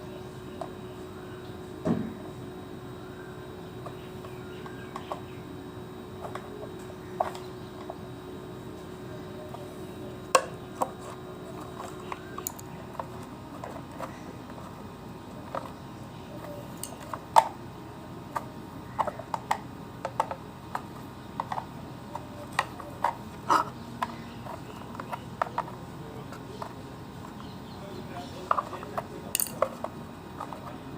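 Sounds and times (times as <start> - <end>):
low background hum: 0.0 - 30.9
plastic parts clicking and knocking: 10.4 - 15.8, 18.4 - 23.2, 24.0 - 27.5, 28.4 - 30.8.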